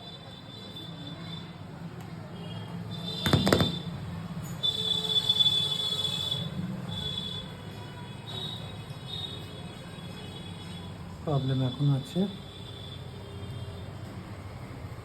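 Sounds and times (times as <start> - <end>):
burst of clicks: 3.2 - 3.9.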